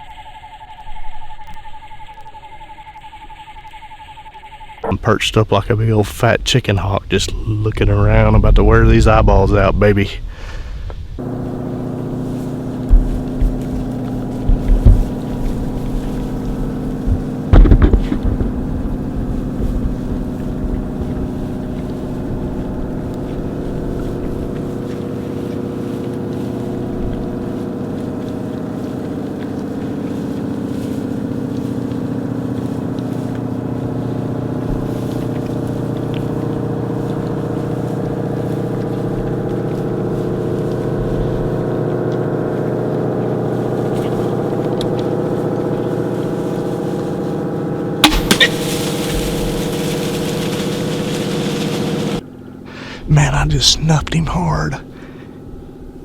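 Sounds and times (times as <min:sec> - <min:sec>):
steady motor drone: 0:11.2 - 0:54.2, 0:54.8 - 0:56.0.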